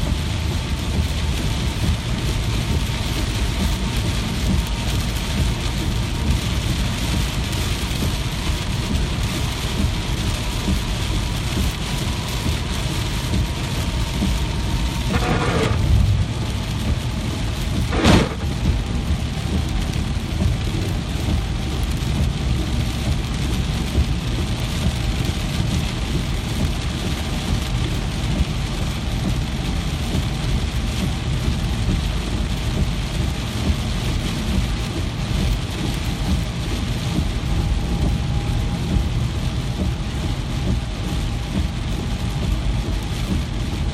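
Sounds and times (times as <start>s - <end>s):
low rumble: 0.0s - 43.9s
steady rain falling: 0.0s - 43.9s
sharp crack: 17.9s - 18.5s.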